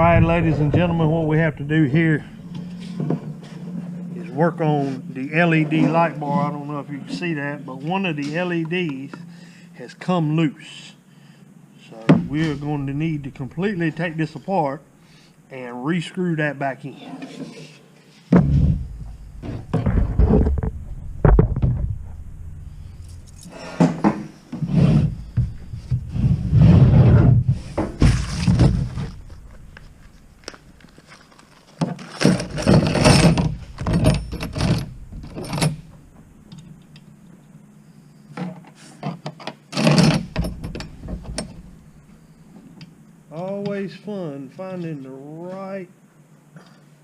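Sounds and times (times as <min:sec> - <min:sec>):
knocks: 0:18.3 - 0:24.3
metal parts and tools rattling: 0:18.7 - 0:24.3, 0:27.8 - 0:36.7, 0:39.8 - 0:41.8.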